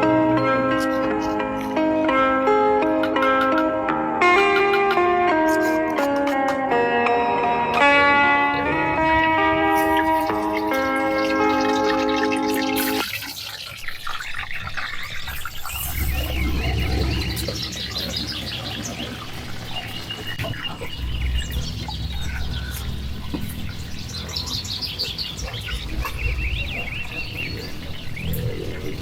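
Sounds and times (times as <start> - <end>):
small birds chirping: 0.0 - 29.0
low rumble: 15.5 - 19.8.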